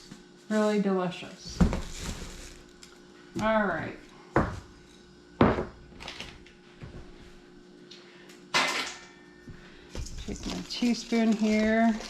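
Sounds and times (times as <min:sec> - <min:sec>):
kitchen items clattering: 0:08.6 - 0:09.1, 0:10.0 - 0:12.0.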